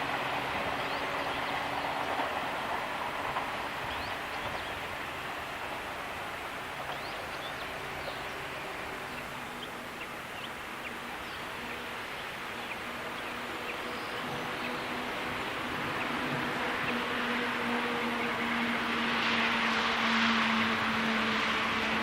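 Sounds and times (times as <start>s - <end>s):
countryside hiss: 0.0s - 22.0s.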